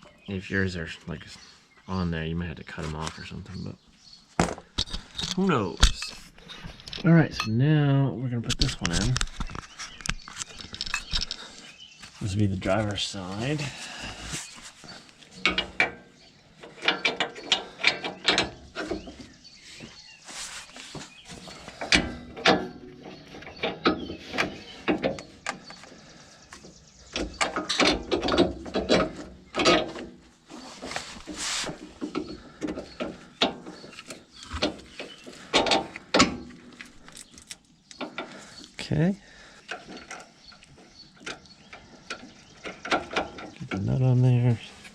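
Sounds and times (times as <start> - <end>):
metal clinks and knocks: 8.6 - 11.6.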